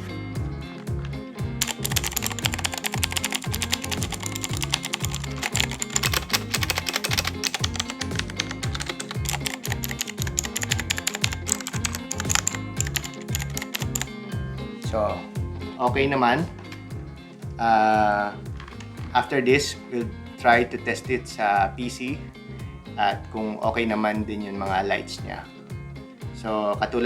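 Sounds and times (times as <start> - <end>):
background music with bass beat: 0.0 - 27.0
mechanical keyboard typing: 1.6 - 14.1.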